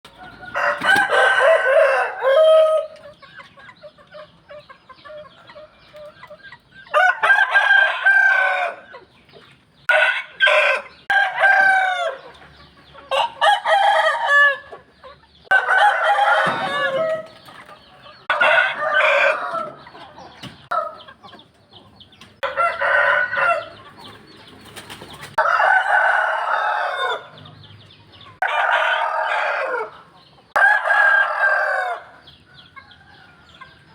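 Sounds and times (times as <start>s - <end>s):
roosters crowing: 0.1s - 3.2s, 6.8s - 9.2s, 9.8s - 21.3s, 22.4s - 33.9s
quieter bird calls: 8.8s - 25.4s.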